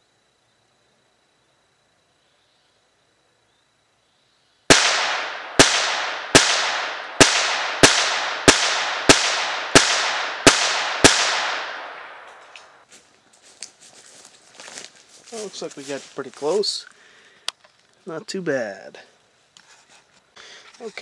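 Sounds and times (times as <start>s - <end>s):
pistol shots echoing: 4.7s - 12.8s.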